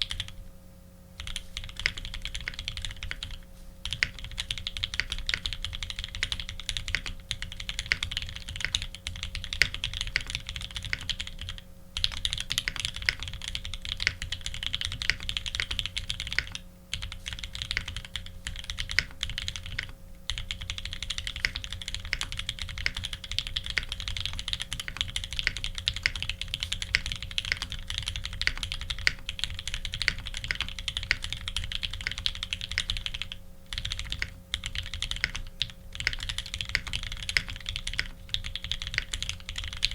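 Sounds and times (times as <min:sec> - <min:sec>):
fast typing on mechanical keyboard: 0:00.0 - 0:00.4, 0:01.2 - 0:39.9.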